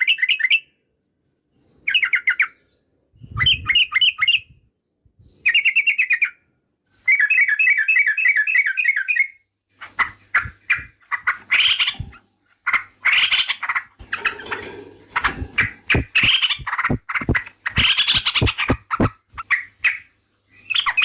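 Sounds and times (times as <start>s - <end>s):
bird call notes and chattering: 7.1s - 21.0s.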